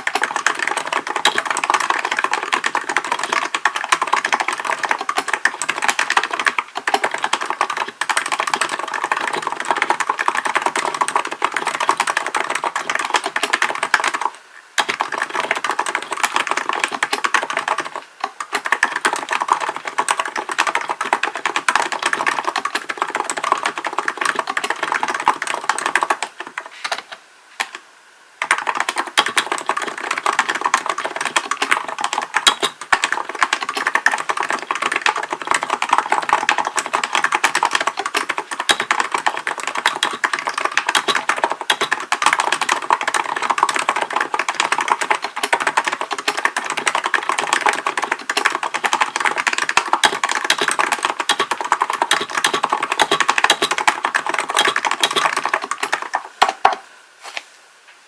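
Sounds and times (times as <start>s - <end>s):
fast keyboard typing: 0.0s - 27.0s, 27.6s - 27.8s, 28.4s - 56.8s.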